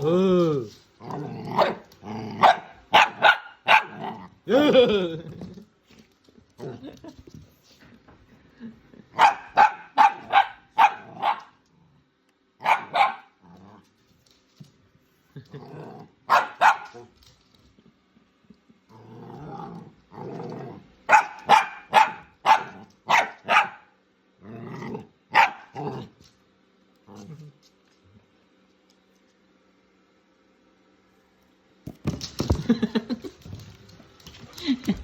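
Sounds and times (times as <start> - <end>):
dog growling: 0.0 - 2.6, 3.8 - 5.7, 13.4 - 13.9, 15.4 - 16.2, 18.9 - 21.0, 24.4 - 26.2
dog barking: 2.4 - 4.0, 9.2 - 11.5, 12.6 - 13.3, 16.3 - 17.0, 21.1 - 23.9, 25.3 - 25.7.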